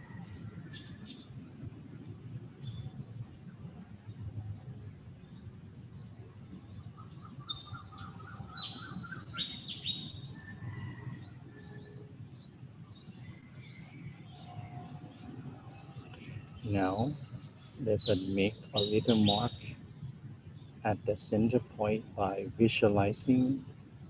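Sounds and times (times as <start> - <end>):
birds chirping: 5.2 - 24.0
bird trill: 6.9 - 19.8.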